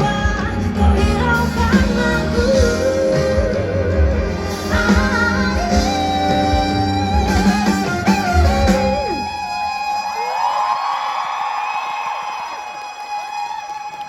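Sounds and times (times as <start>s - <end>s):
person singing: 0.0s - 9.5s
live pop band playing: 0.0s - 10.5s.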